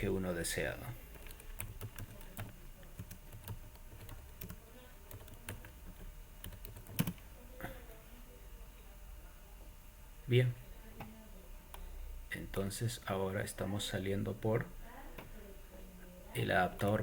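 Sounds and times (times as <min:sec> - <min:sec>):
computer keyboard typing: 0:01.1 - 0:07.3.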